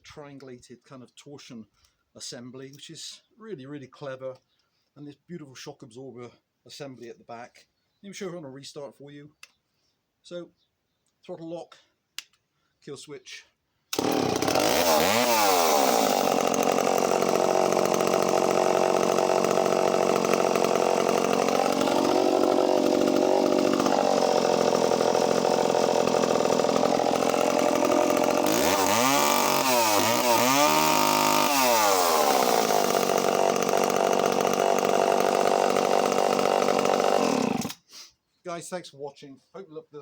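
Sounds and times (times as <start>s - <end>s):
chainsaw engine idling and revving: 13.9s - 37.8s.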